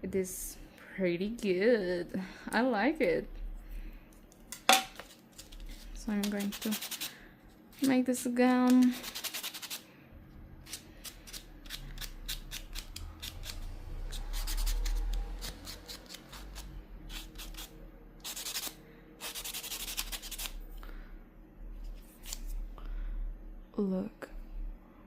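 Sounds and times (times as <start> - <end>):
nail file rasping on fingernail: 6.2 - 7.1, 8.9 - 9.8, 10.7 - 13.7, 14.3 - 20.6.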